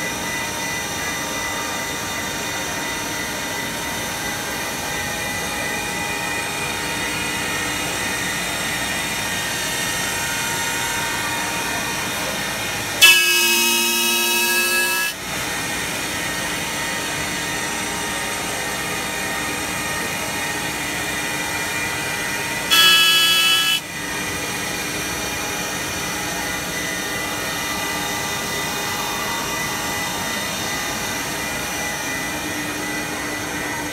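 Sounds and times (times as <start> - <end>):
high-pitched cutting bursts: 13.0 - 15.2, 22.7 - 23.9
wood lathe running: 22.7 - 23.9.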